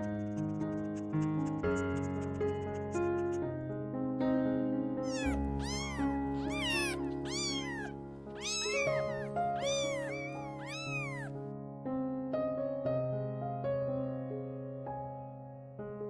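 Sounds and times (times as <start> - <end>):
soft piano music: 0.0 - 16.0
cat meowing: 5.1 - 11.3.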